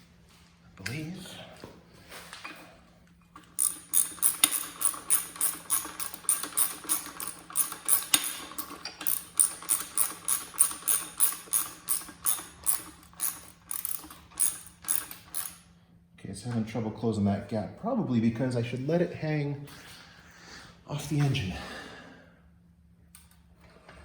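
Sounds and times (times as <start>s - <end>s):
ratchet wrench clicking: 3.6s - 15.6s.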